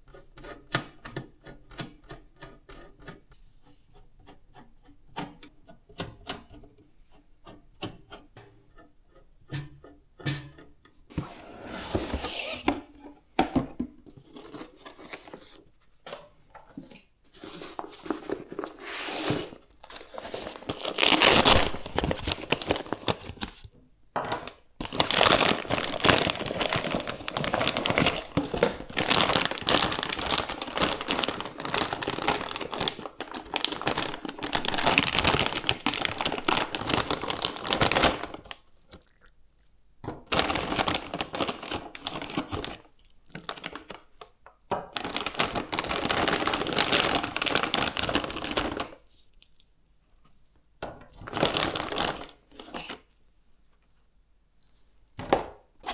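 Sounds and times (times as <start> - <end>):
packaging crinkling and tearing: 17.4 - 23.7, 24.5 - 39.3, 40.3 - 49.0, 51.2 - 53.2.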